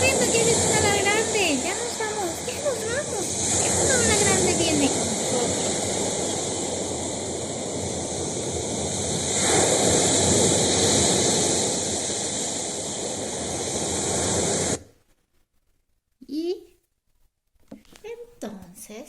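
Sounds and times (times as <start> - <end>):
ocean waves surf: 0.0 - 14.8.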